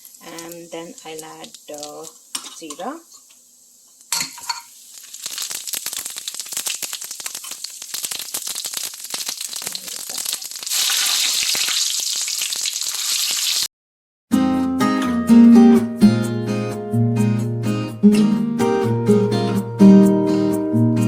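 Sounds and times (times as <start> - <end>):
seeds sizzling in hot oil: 0.0 - 13.7.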